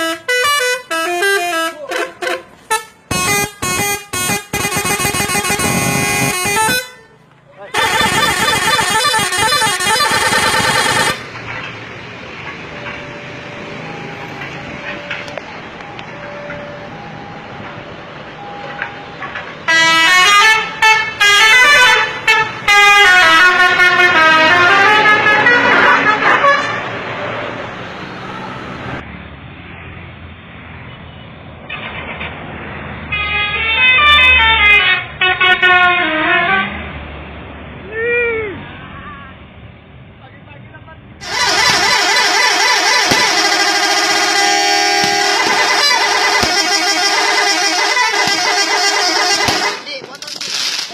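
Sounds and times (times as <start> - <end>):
loud vehicle horn: 0.0 - 11.3, 19.6 - 27.0, 33.1 - 36.8, 41.2 - 49.9
quiet vehicle noise: 0.0 - 50.9.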